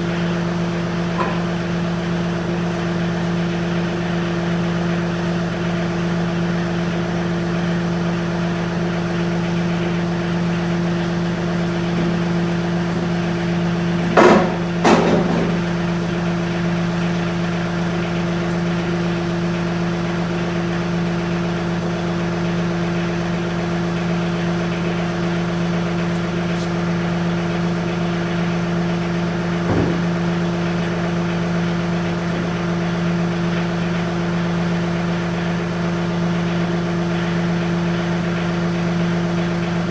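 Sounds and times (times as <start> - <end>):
tractor engine running: 0.0 - 39.9
loud clunks: 11.8 - 15.9, 29.6 - 30.4.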